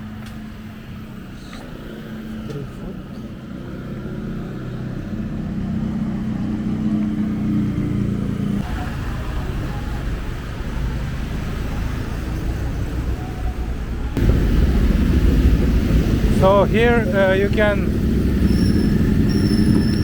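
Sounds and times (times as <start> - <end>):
vehicle engine hum: 0.0 - 20.0
low steady rumble: 14.2 - 20.0.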